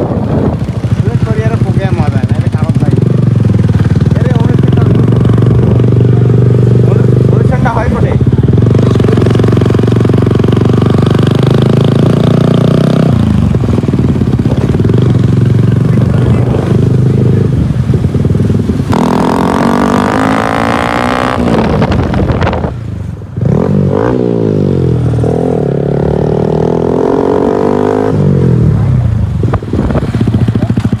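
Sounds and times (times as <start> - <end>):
vehicle engine accelerating: 0.0 - 22.8.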